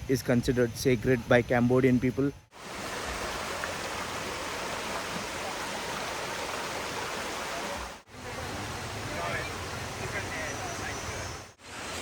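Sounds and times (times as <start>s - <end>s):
river water flowing: 2.5s - 12.0s.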